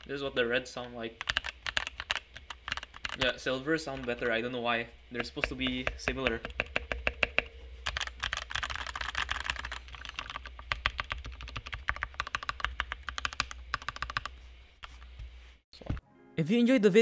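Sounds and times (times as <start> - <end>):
mechanical keyboard typing: 1.2 - 4.4, 5.2 - 14.4.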